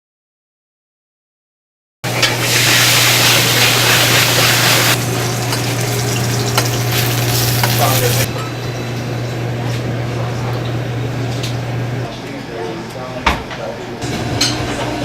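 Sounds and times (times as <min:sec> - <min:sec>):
sizzling hiss: 0:02.4 - 0:08.3.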